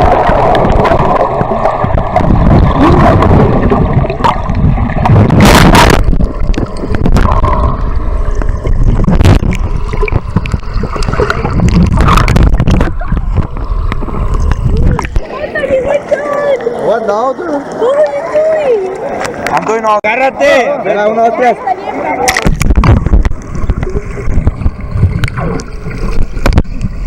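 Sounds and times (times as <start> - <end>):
wind buffeting on microphone: 0.0 - 7.8, 8.6 - 15.4, 22.4 - 25.4
water splashing and sloshing: 0.0 - 27.0.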